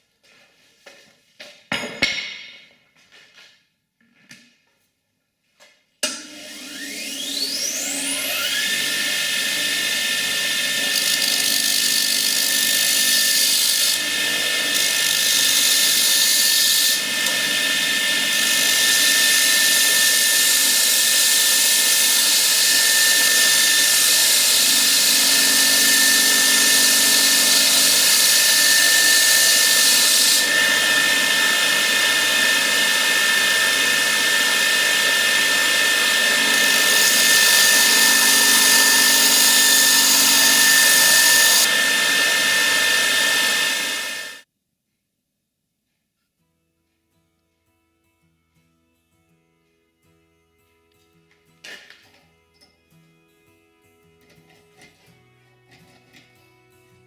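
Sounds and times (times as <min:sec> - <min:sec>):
electric power tool whining: 0:06.0 - 0:44.4.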